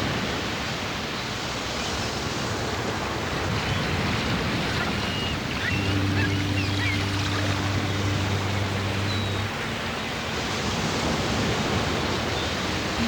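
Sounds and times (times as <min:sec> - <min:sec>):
ocean surf rushing: 0:03.0 - 0:13.0
high bird chirps: 0:05.2 - 0:09.6
low drone tone: 0:05.3 - 0:11.0.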